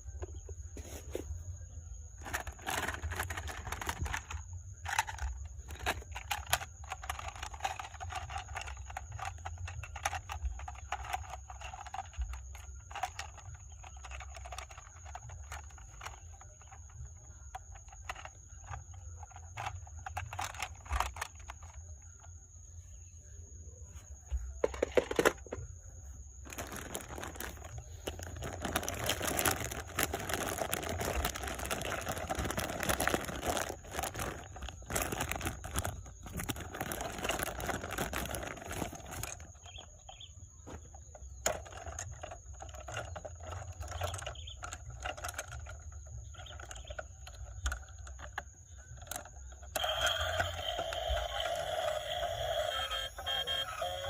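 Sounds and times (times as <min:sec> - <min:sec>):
rustling: 0:00.0 - 0:17.0, 0:23.8 - 0:40.0
objects being handled clicking: 0:02.2 - 0:22.4, 0:24.3 - 0:25.7, 0:26.4 - 0:53.6.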